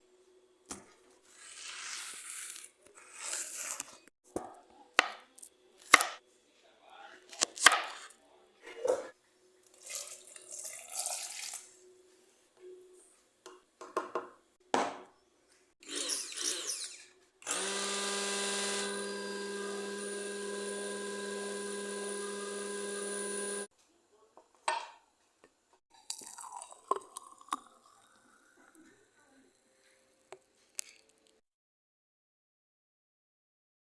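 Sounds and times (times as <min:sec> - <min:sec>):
electric blender running: 0:15.8 - 0:23.7.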